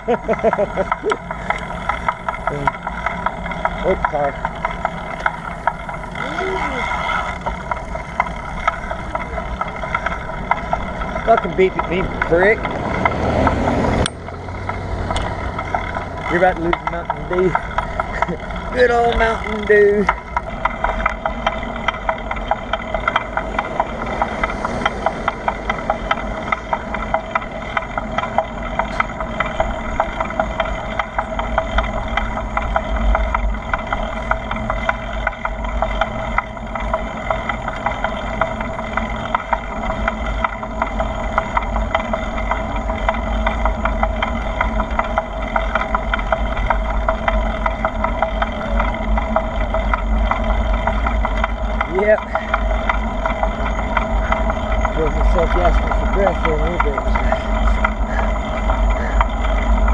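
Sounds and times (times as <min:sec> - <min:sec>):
bicycle rattle and road noise: 0:00.0 - 0:59.9.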